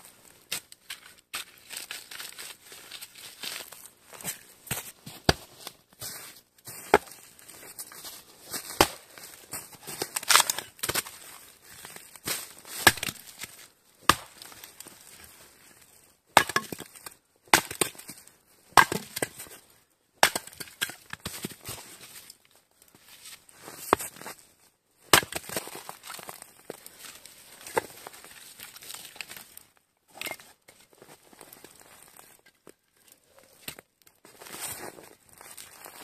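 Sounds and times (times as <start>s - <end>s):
crunching scrapes: 30.2s - 36.0s.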